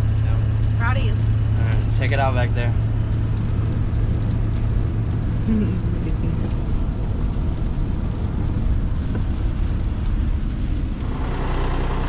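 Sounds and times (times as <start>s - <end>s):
engine hum: 0.0s - 12.0s
vehicle rumble on road: 0.0s - 12.0s.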